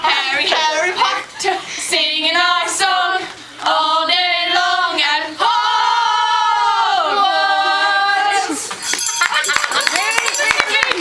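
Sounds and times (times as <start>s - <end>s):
voices singing a cappella: 0.0s - 8.8s.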